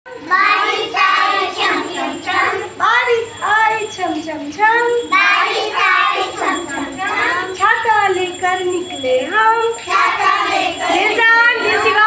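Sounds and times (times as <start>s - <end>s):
children singing together: 0.2s - 2.8s, 5.1s - 7.6s, 9.7s - 12.0s.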